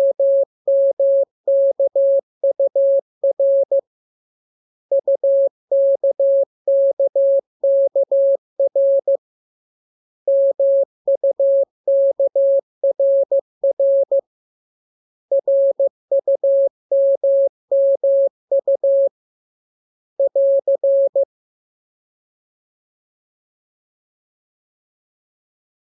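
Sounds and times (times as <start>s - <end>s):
morse code beeps: 10.3s - 14.2s, 15.3s - 19.1s.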